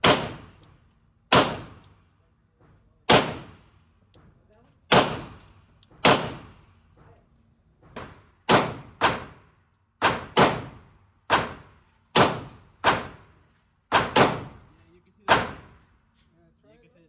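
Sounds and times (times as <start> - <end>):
gunshots with echo: 0.0 - 0.6, 1.3 - 1.8, 3.1 - 3.6, 4.9 - 5.4, 6.0 - 6.6, 8.0 - 9.4, 13.9 - 14.6.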